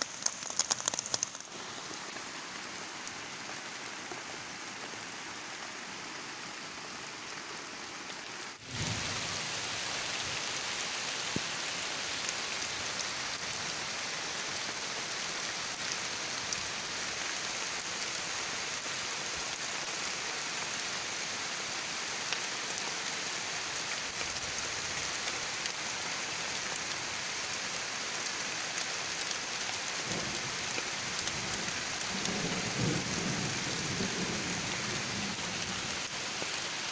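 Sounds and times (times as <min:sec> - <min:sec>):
heavy rain: 0:00.0 - 0:36.9
low rumble of thunder: 0:31.3 - 0:35.8.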